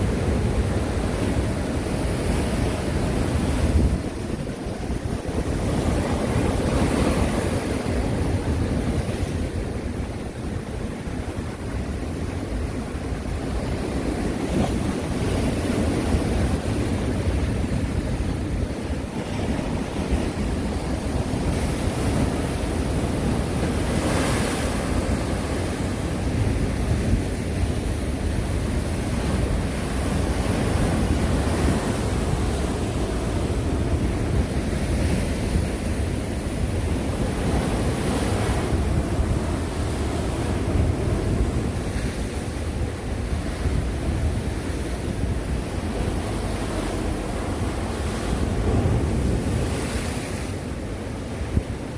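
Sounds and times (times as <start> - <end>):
sea waves breaking on shore: 0.0 - 51.9
wind buffeting microphone: 0.0 - 51.9.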